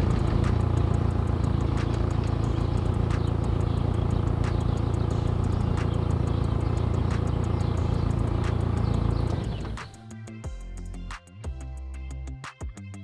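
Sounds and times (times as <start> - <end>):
car engine idling: 0.0 - 10.0.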